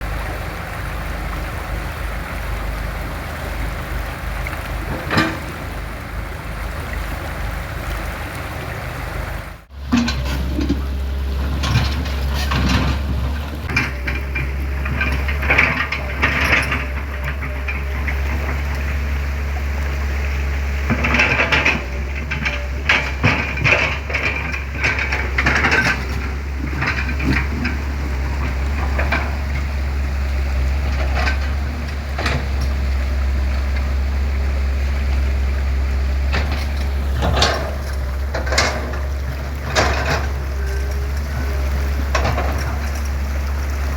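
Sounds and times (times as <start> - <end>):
excavator diesel engine: 0.0 - 43.9
knocks clanks and scrapes: 4.9 - 5.7, 9.7 - 19.0, 20.9 - 34.0, 36.0 - 43.9.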